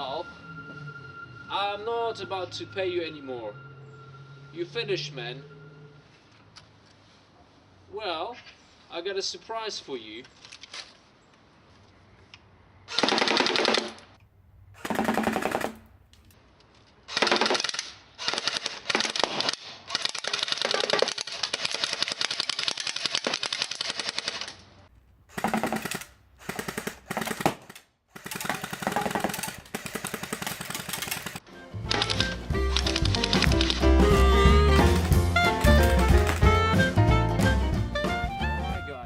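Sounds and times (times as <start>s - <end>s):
toy gun firing rapid bursts: 12.9s - 13.9s, 14.8s - 15.8s, 17.1s - 24.5s, 25.3s - 31.4s.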